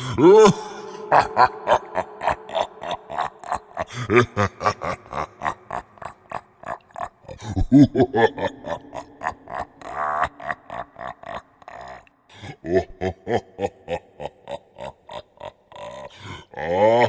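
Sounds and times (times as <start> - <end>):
deep sinister male laugh: 0.0 - 17.0.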